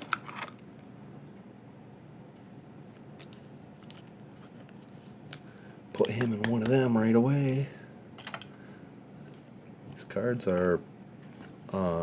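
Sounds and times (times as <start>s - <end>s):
card clicks and rustles: 3.2s - 6.8s.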